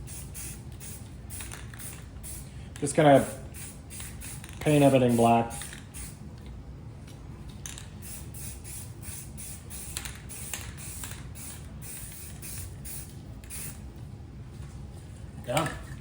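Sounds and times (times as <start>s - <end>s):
spray paint hissing: 0.0s - 2.5s, 3.2s - 6.2s, 8.0s - 13.8s.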